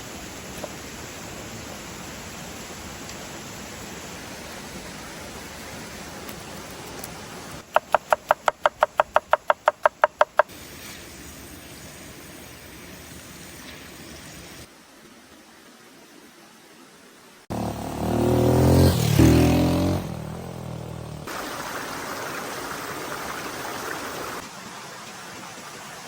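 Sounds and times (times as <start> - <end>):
rapid even knocks: 7.6 - 10.5.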